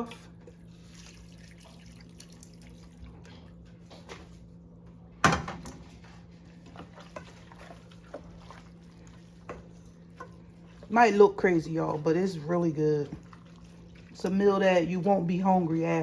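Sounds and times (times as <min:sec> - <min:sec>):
broth dripping and splashing in pot: 0:00.0 - 0:04.1, 0:06.5 - 0:14.9.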